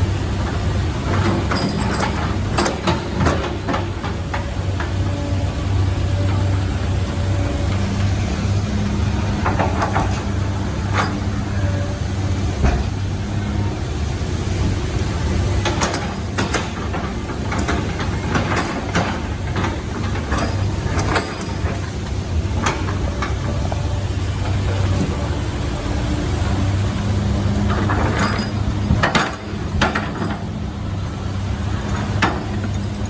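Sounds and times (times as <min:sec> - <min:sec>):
heavy vehicle engine humming: 0:00.0 - 0:33.0
sharp knocks and clanks: 0:15.6 - 0:21.8, 0:27.7 - 0:30.5.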